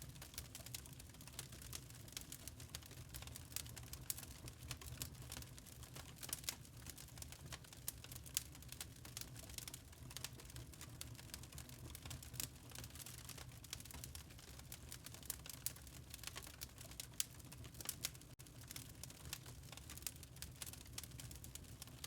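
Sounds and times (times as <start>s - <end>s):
log fire crackling: 0.0s - 22.0s.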